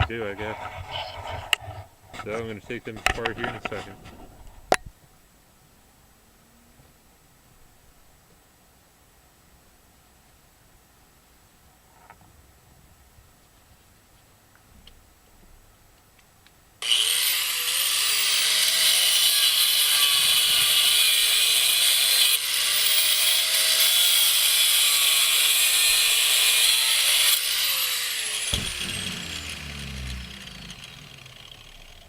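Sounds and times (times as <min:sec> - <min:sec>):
angle grinder grinding metal: 0:16.8 - 0:32.0.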